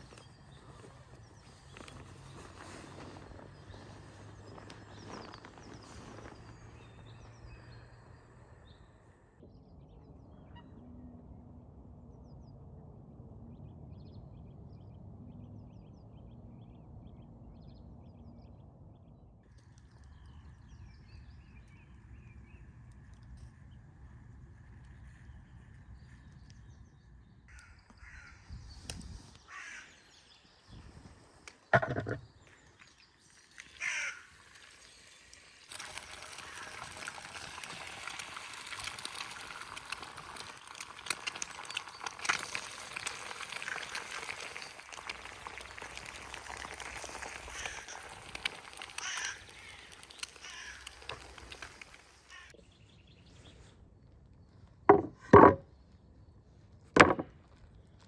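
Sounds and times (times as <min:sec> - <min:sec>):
eggs sizzling in a pan: 0:33.3 - 0:52.6.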